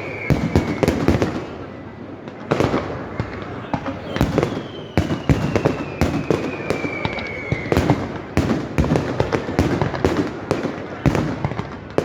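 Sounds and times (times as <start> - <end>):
firework whistle sliding down: 0.0 - 1.6, 4.0 - 8.0
fireworks bangs: 0.0 - 12.0.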